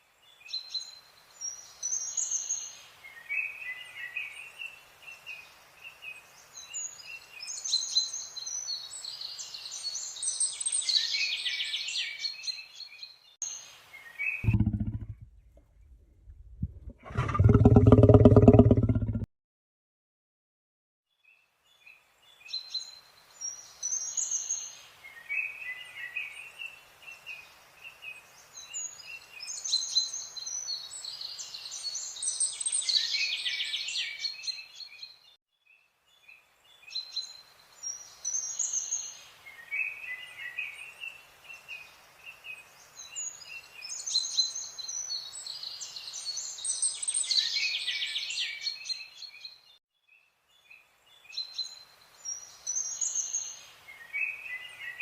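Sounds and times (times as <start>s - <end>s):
birds chirping and trilling: 14.2s - 19.2s.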